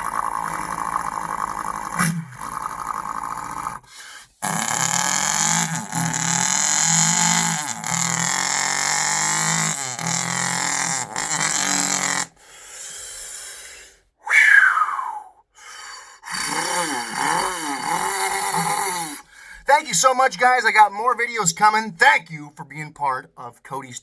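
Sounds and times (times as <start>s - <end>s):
man imitating truck engine: 0.0s - 12.4s, 16.2s - 24.0s
falling whistle: 14.2s - 15.4s.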